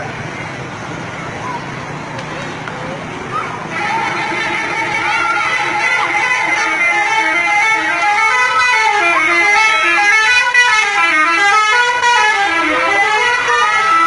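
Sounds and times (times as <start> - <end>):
multi-tone bus air horn melody: 3.6 - 14.0.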